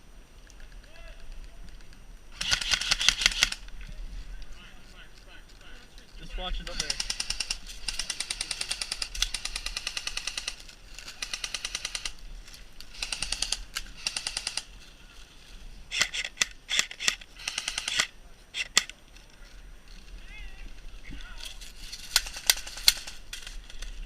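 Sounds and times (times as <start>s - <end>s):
airsoft rifle firing bursts: 2.3s - 3.6s, 6.8s - 12.2s, 12.9s - 14.7s, 15.9s - 18.9s, 22.1s - 23.2s
loud sharp cracks: 2.3s - 3.6s.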